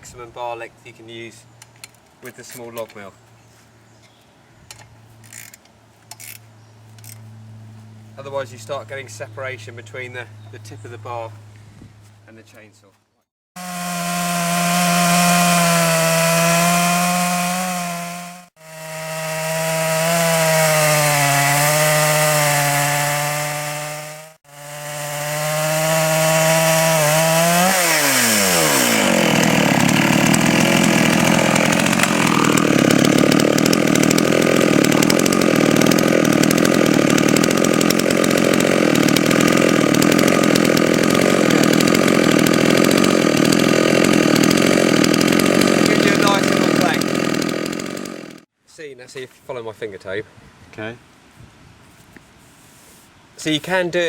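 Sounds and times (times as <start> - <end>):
chainsaw ripping a log: 13.6 - 48.5.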